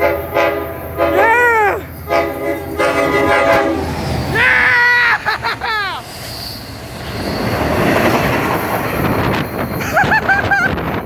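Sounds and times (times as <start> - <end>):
locomotive chime horn blasts: 0.0 - 4.2
train rolling: 0.0 - 11.0.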